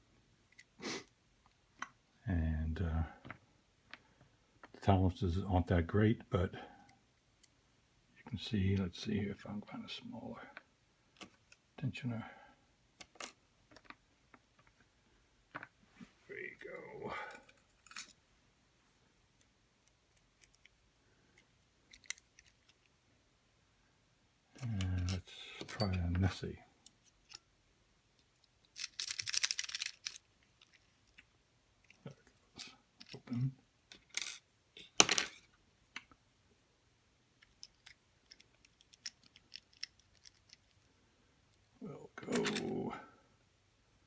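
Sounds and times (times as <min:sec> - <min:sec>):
light clicks of lock picking: 0:37.4 - 0:40.9.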